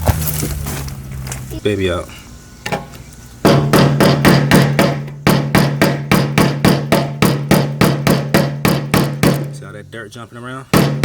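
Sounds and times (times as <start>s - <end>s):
steady low hum: 0.0s - 11.0s
hammer tapping on metal: 2.7s - 9.7s, 10.7s - 11.0s.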